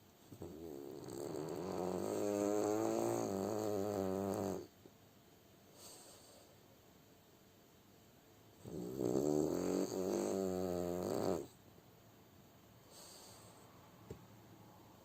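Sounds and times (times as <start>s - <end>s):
dog snoring: 0.3s - 4.7s, 8.6s - 11.6s.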